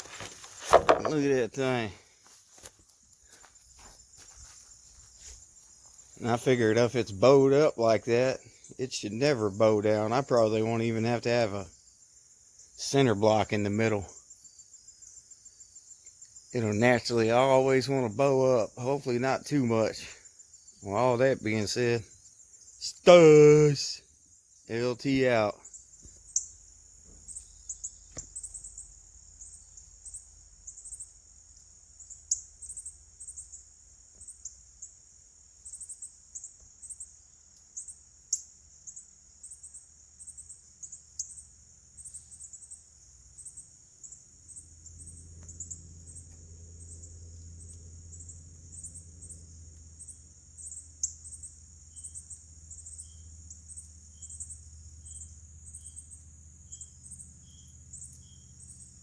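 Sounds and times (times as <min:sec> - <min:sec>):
crickets chirping: 0:00.0 - 0:59.0
low steady hum: 0:44.2 - 0:59.0.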